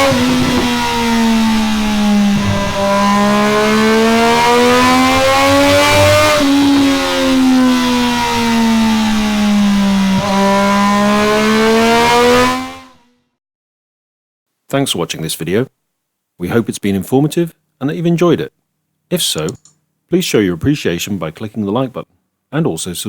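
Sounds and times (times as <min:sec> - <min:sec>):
motorcycle engine revving: 0:00.0 - 0:13.1.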